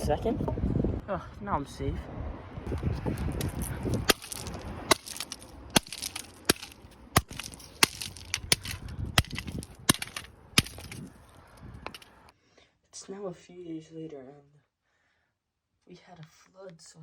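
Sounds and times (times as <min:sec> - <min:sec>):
phone being smashed: 0:03.3 - 0:11.1.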